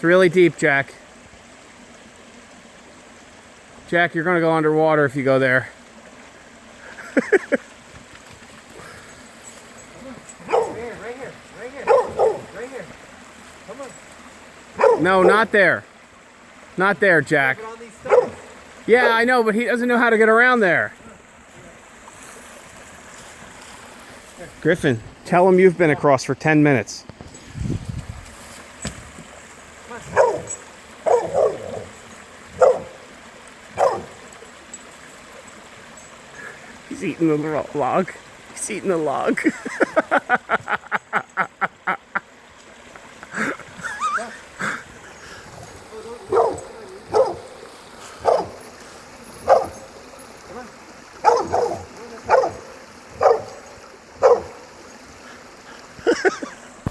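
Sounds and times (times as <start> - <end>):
faint river rush: 0.0 - 56.9
dog barking: 10.4 - 11.1, 11.8 - 12.6, 14.8 - 15.5, 18.0 - 18.6, 30.0 - 31.9, 32.6 - 33.0, 33.8 - 34.2, 46.3 - 47.6, 48.2 - 48.6, 49.4 - 49.9, 51.2 - 54.6.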